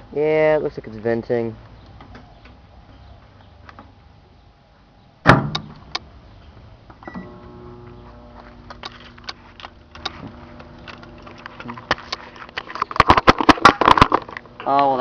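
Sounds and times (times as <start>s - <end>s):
electrical hum: 0.0s - 15.0s
capacitor bursting with loud pop: 5.2s - 6.0s, 12.9s - 14.4s
short beep: 7.0s - 7.4s
sharp crackles and pops: 7.4s - 14.8s.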